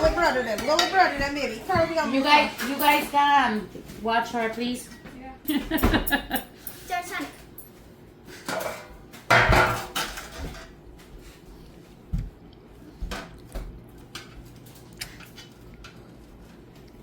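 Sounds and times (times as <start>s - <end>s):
dishes and utensils clattering: 0.0s - 3.6s, 5.6s - 10.8s, 14.0s - 16.0s.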